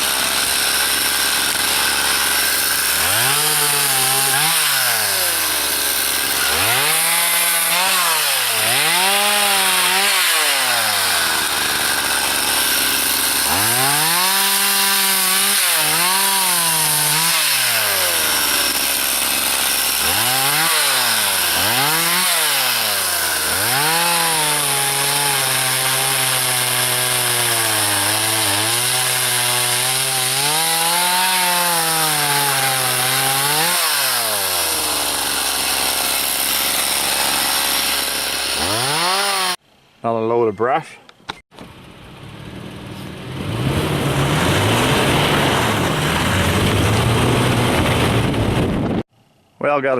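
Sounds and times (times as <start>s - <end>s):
chainsaw cutting and revving: 0.0s - 39.6s, 43.0s - 49.1s.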